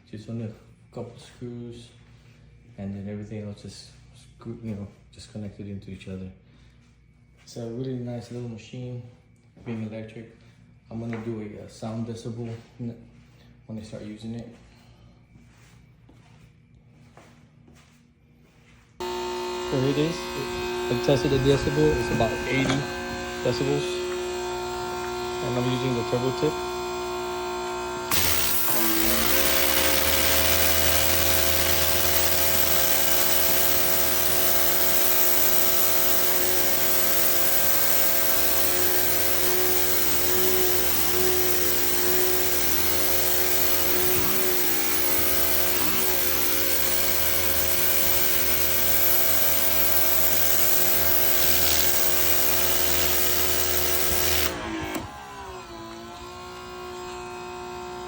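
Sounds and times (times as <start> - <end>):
pressure washer motor humming: 19.0 - 57.5.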